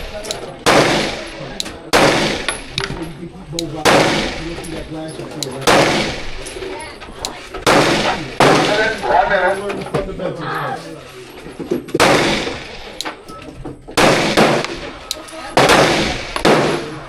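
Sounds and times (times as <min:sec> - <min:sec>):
gunshots: 0:00.0 - 0:02.9, 0:03.8 - 0:04.8, 0:05.6 - 0:06.6, 0:07.6 - 0:09.3, 0:12.0 - 0:13.0, 0:13.9 - 0:17.0.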